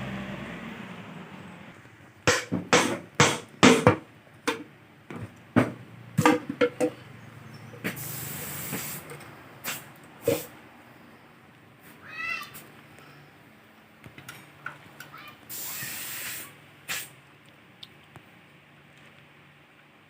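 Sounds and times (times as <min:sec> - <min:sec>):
short hiss: 0:07.8 - 0:10.6, 0:15.4 - 0:17.2.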